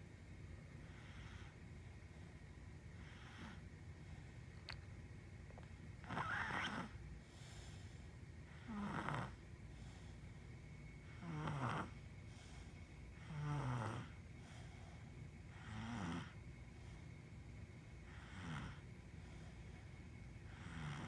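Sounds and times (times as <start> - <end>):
person snoring: 11.2 - 12.0.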